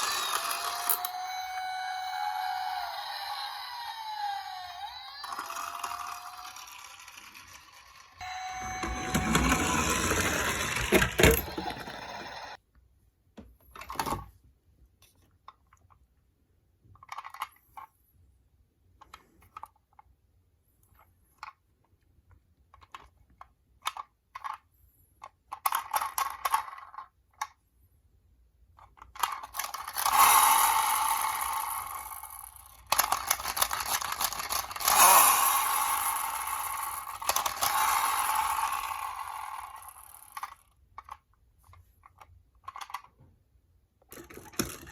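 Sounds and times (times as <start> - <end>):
toy cars clicking and clattering: 0.0 - 12.6, 16.8 - 17.9, 20.9 - 27.6, 28.7 - 43.2, 44.0 - 44.9
toy cars rolling: 0.0 - 12.6, 16.9 - 17.9, 22.7 - 27.6, 28.8 - 43.2, 44.0 - 44.9.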